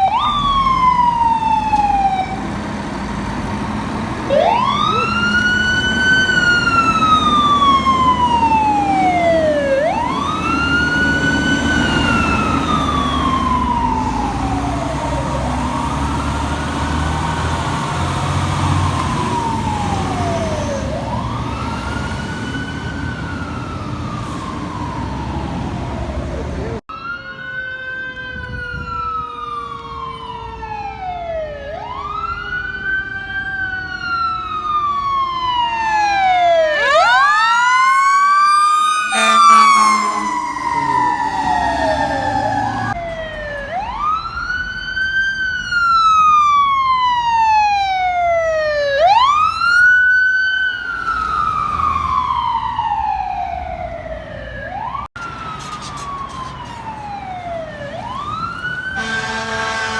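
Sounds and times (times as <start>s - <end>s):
fire engine sirens wailing: 0.0s - 59.9s.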